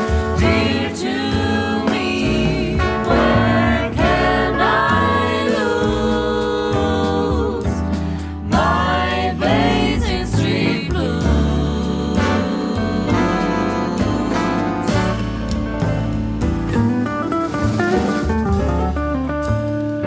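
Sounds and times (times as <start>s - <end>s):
vocal group singing in harmony: 0.0s - 15.2s
low bass line: 0.0s - 20.0s.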